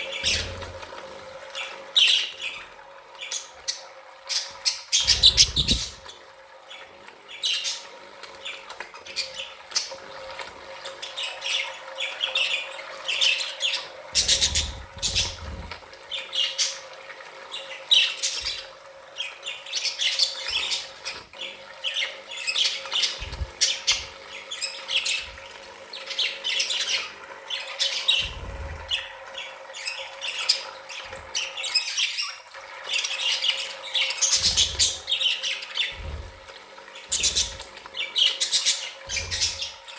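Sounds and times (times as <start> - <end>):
budgerigars chattering and squawking: 0.0 - 0.8, 3.2 - 6.2, 11.1 - 16.8, 17.5 - 36.4, 37.0 - 39.9.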